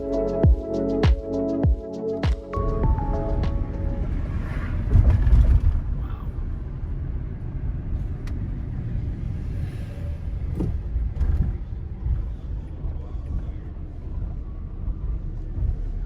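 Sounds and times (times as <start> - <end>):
held music notes: 0.0 - 4.4
van engine and road rumble: 3.2 - 16.0.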